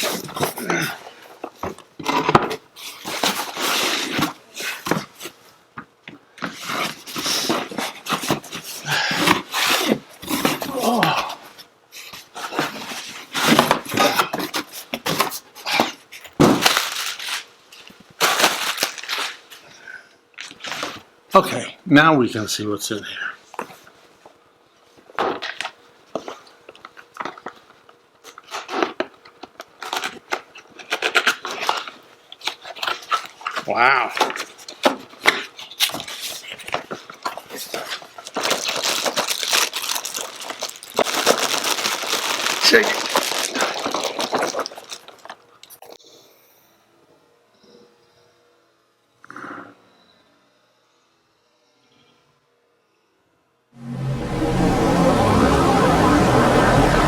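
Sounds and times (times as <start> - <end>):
cardboard rustling and tearing: 12.4 - 17.5, 18.2 - 19.5, 34.2 - 45.4.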